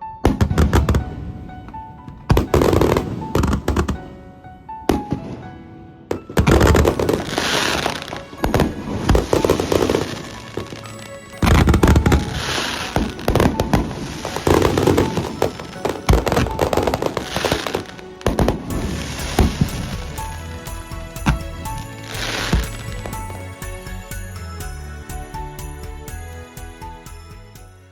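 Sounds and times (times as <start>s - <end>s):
firework pops and bangs: 0.3s - 4.1s, 6.1s - 20.4s, 21.2s - 23.6s
fireworks crackling: 0.4s - 4.2s, 6.1s - 24.8s
firework shells booming: 6.1s - 10.9s, 11.5s - 20.6s, 21.2s - 23.5s.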